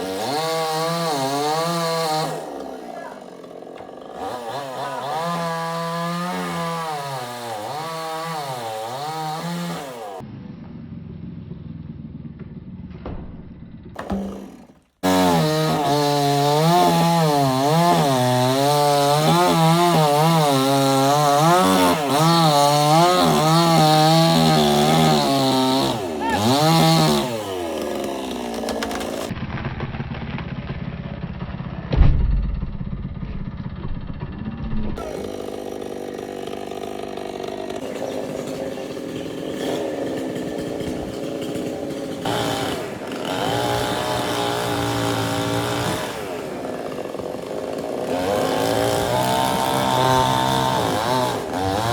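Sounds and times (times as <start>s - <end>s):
chainsaw cutting: 0.0s - 10.2s, 13.9s - 31.8s, 34.0s - 51.9s
heavy low thud: 12.4s - 14.0s, 31.9s - 35.0s.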